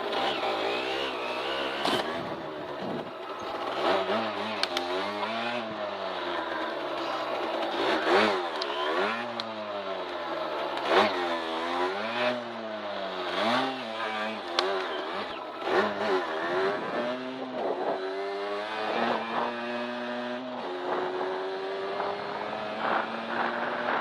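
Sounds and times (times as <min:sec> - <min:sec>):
motorcycle engine revving: 0:00.0 - 0:24.0.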